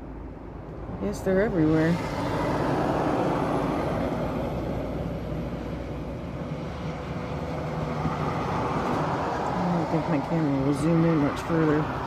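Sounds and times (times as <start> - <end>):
vehicle rumble: 0.0 - 12.0.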